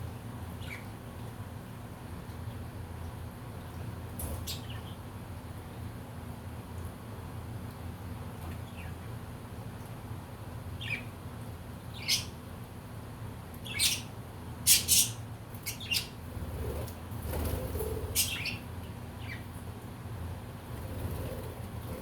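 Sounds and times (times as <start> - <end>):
low background hum: 0.0 - 22.0
budgerigars chirping and squawking: 12.0 - 12.3, 13.7 - 14.1, 14.7 - 16.2, 17.7 - 18.6.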